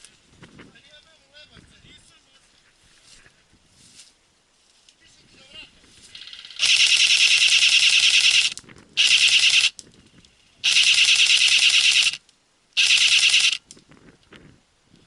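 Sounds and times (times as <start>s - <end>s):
airsoft rifle firing full auto: 6.2s - 9.8s, 10.6s - 12.2s, 12.8s - 13.6s.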